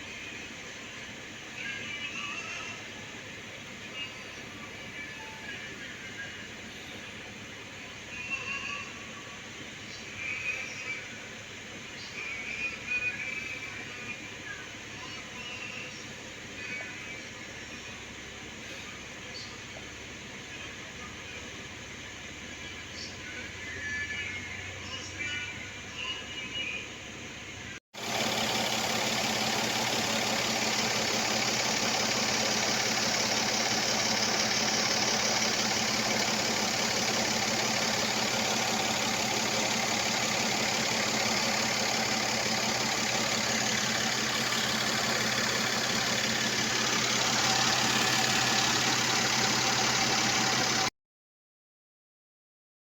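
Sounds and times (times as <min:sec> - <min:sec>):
car engine idling: 0:00.0 - 0:08.2, 0:28.0 - 0:50.9.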